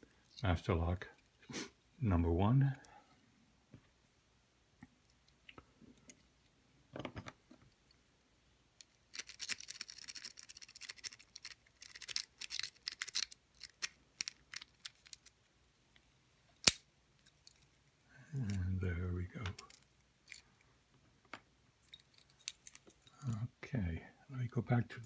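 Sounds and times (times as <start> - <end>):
lock pick raking metallic clicks: 9.1 - 15.4, 16.6 - 17.6.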